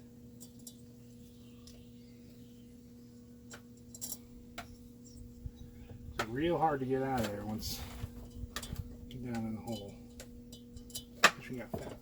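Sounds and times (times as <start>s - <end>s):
steady low hum: 0.0s - 12.0s
small metal parts clicking: 0.4s - 0.8s, 3.5s - 4.7s, 8.6s - 11.3s.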